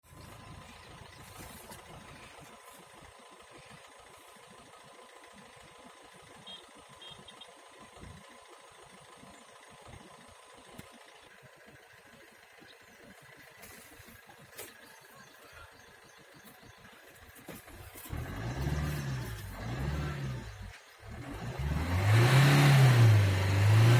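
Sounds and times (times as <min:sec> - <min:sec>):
engine idling roughly: 0:00.0 - 0:21.5.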